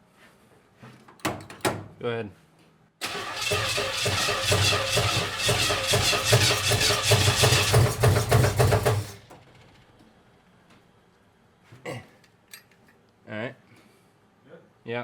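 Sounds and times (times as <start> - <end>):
engine cranking by starter: 3.0 - 10.1.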